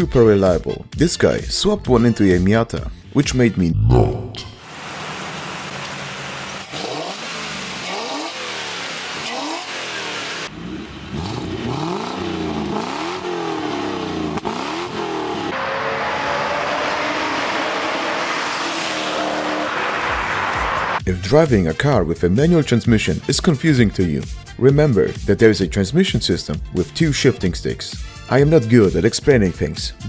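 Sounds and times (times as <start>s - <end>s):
car engine revving: 4.6s - 21.0s.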